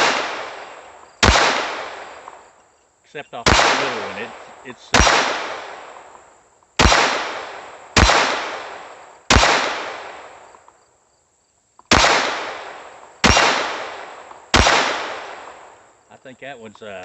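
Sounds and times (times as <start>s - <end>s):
pistol shots with echo: 0.0s - 2.6s, 3.3s - 10.6s, 11.9s - 15.8s.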